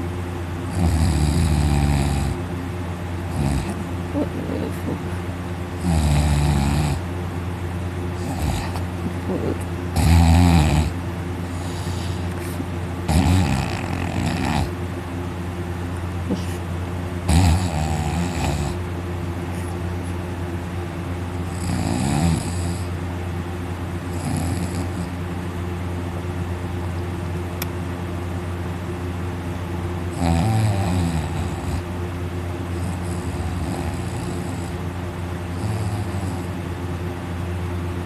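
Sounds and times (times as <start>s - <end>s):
steady low hum: 0.0s - 38.0s
person snoring loudly: 0.7s - 2.4s, 3.3s - 5.0s, 5.8s - 7.0s, 8.2s - 12.4s, 13.1s - 14.7s, 17.3s - 18.8s, 21.5s - 22.9s, 24.1s - 25.1s, 30.1s - 31.8s, 32.8s - 34.8s, 35.5s - 36.5s.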